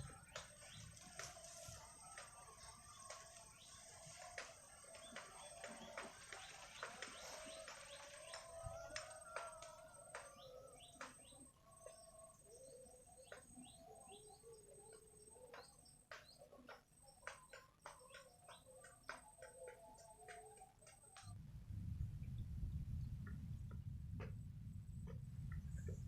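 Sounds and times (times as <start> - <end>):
faint birds chirping: 0.0 - 21.4.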